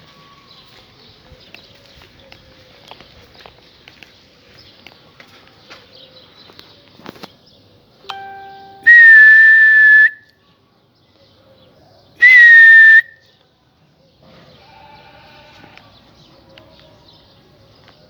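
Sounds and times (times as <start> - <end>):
person whistling shrilly: 8.8 - 10.2, 12.2 - 13.2.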